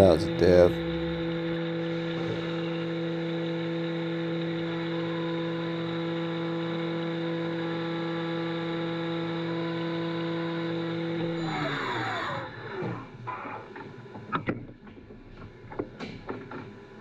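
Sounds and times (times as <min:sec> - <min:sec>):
mill spindle humming whine: 0:00.0 - 0:13.5.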